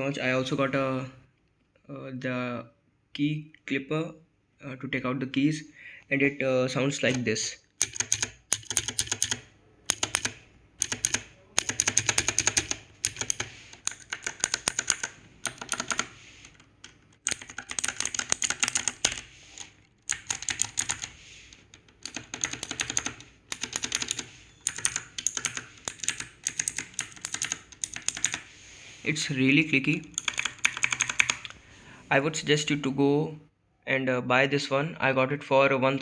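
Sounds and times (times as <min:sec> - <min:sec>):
clicky mechanical keyboard typing: 0:07.8 - 0:28.5, 0:30.0 - 0:31.6.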